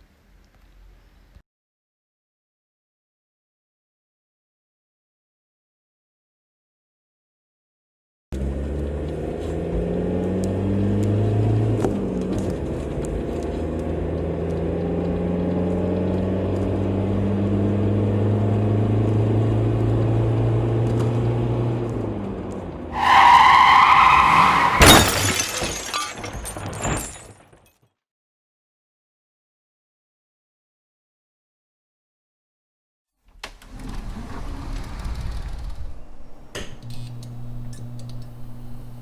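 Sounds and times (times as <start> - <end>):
tyres screeching: 23.0 - 26.3
car crash: 23.0 - 27.7
debris falling: 23.0 - 27.8
glass shattering: 23.0 - 27.8.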